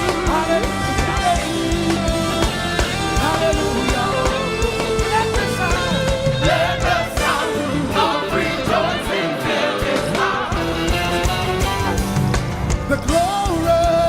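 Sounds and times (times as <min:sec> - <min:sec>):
person singing: 0:00.0 - 0:10.4
steady drum beat: 0:00.0 - 0:14.0
choir singing: 0:00.1 - 0:12.1.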